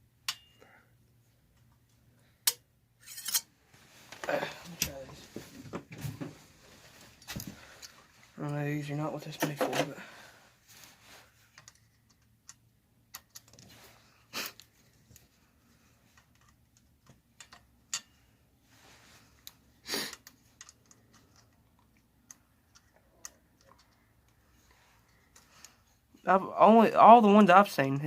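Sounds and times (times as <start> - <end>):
hand tools clicking and scraping: 2.4 - 3.5.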